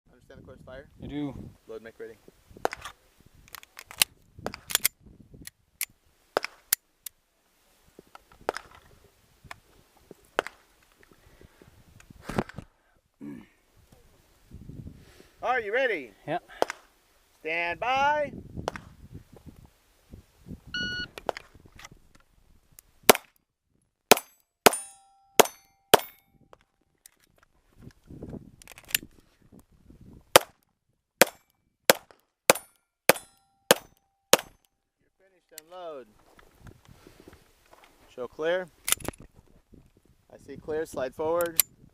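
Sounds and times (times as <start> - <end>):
pistol metallic clicks and clacks: 3.5 - 7.2, 24.1 - 26.2, 31.2 - 34.8, 38.8 - 39.3
faint ringing tone: 20.8 - 21.1.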